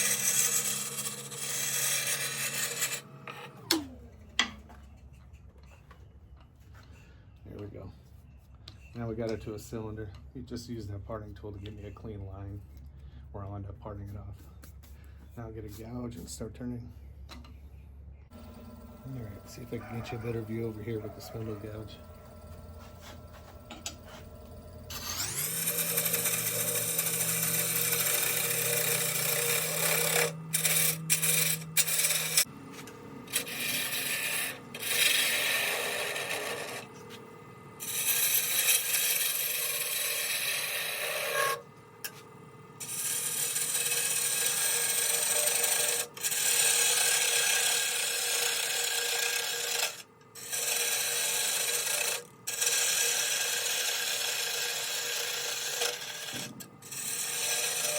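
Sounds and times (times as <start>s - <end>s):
wood lathe spinning up: 0.0s - 4.6s, 18.3s - 57.9s
gouge shaving wood: 18.3s - 37.2s, 37.8s - 41.6s, 42.8s - 57.9s.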